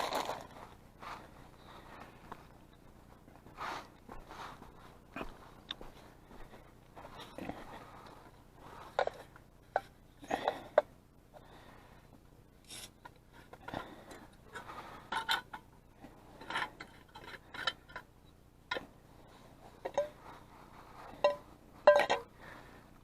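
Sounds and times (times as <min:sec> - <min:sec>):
camp cookware rubbing and scraping: 0:03.4 - 0:05.1, 0:19.2 - 0:22.0.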